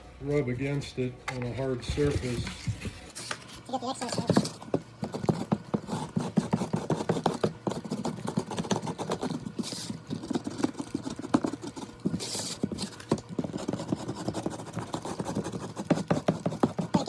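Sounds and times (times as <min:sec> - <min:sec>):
knife scraping drywall: 0:02.3 - 0:17.0
knife knocking on drywall: 0:04.1 - 0:09.4, 0:10.0 - 0:17.0.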